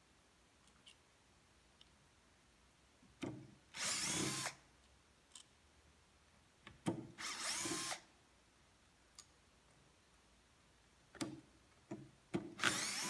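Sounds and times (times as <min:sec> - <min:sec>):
cordless drill spinning: 0:03.7 - 0:04.6, 0:07.2 - 0:08.1, 0:12.6 - 0:13.0.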